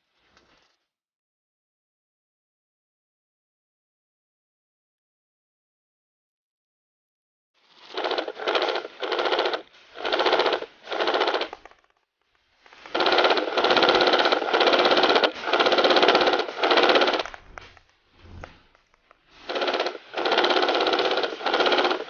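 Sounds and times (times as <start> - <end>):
airsoft gun firing bursts: 7.9 - 11.6, 12.9 - 17.4, 19.5 - 22.0.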